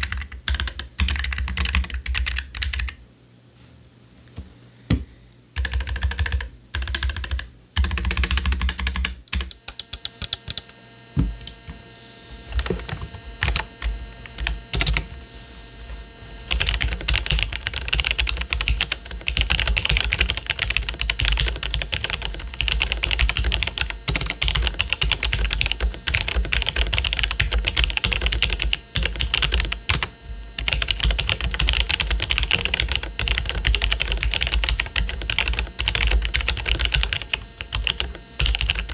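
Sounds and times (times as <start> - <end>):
typing on mechanical keyboard: 0.0 - 3.0, 5.6 - 10.6, 14.4 - 15.0, 16.5 - 38.9.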